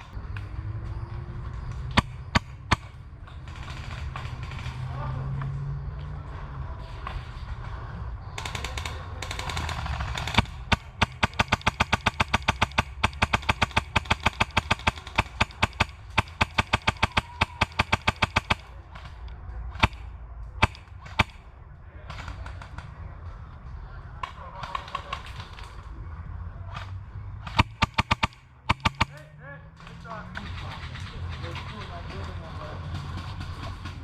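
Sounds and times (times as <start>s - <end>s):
airsoft gun shots: 1.9s - 3.0s, 9.4s - 18.7s, 20.6s - 21.4s, 27.5s - 29.3s.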